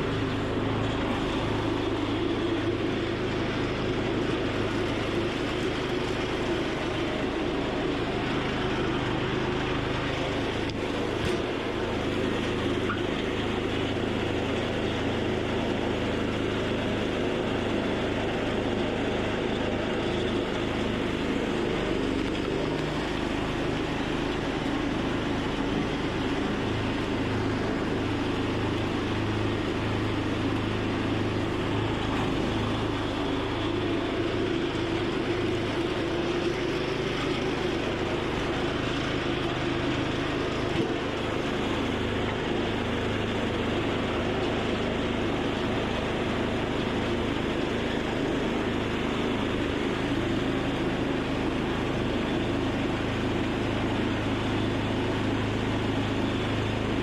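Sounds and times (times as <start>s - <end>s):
engine droning steadily: 0.0s - 57.0s.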